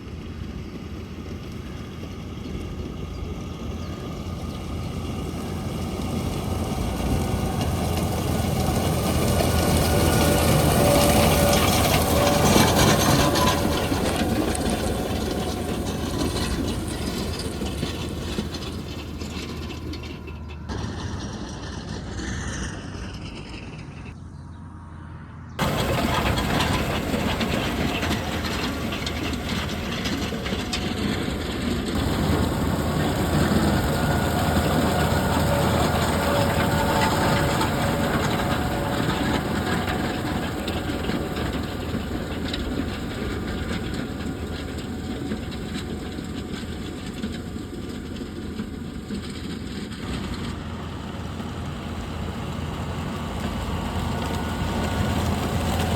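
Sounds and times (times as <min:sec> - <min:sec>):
tractor engine drone: 0:00.0 - 0:55.9
broad rushing noise: 0:25.6 - 0:46.2.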